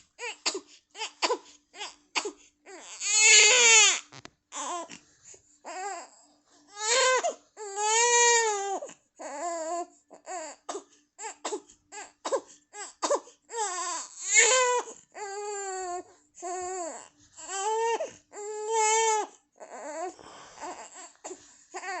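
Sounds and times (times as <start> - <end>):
baby crying: 0.2 - 4.0, 5.7 - 22.0.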